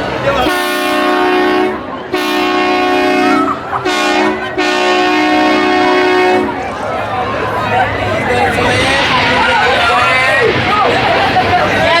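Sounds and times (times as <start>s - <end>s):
multi-note horn blasts: 0.4s - 6.6s.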